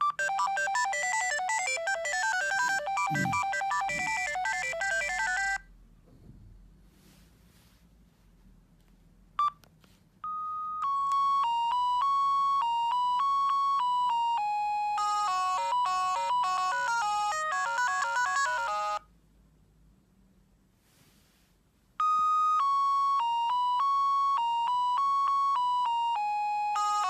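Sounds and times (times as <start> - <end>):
synthesized beeping ringtone melody: 0.0 - 5.6, 10.2 - 19.0, 22.0 - 27.0
short phone beep: 2.7 - 4.3.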